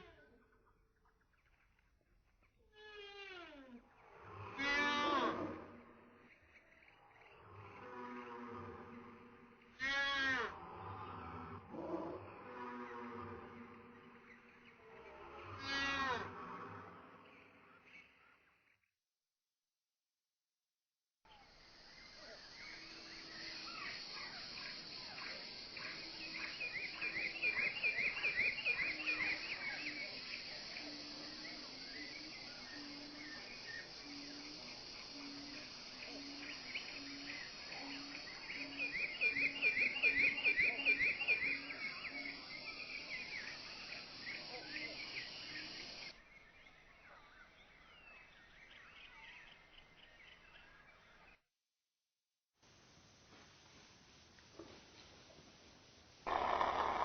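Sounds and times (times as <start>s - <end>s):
steady high hiss: 21.3s - 46.2s, 52.6s - 57.0s
birdlike chirps and whistled calls: 22.0s - 50.8s
slowed animal chattering calls: 56.3s - 57.0s.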